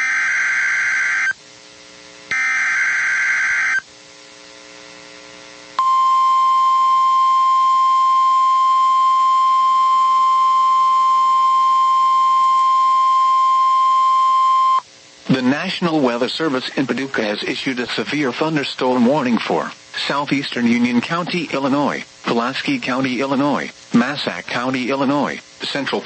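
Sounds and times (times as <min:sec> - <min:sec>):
steady alarm tone: 0:00.0 - 0:01.4, 0:02.3 - 0:03.9.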